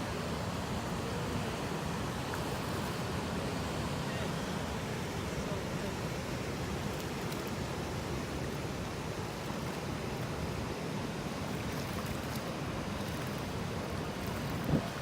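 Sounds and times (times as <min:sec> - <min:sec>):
river water rushing: 0:00.0 - 0:15.0.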